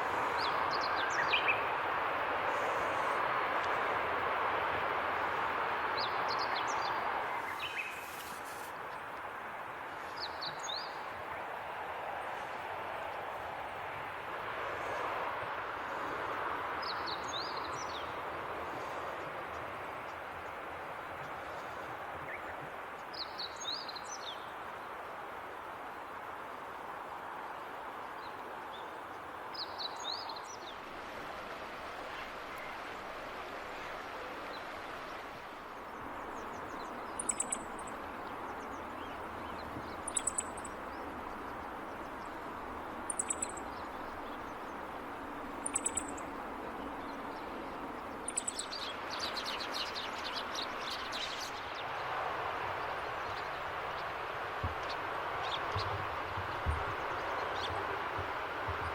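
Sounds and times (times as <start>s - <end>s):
wild birds calling: 35.7s - 51.9s.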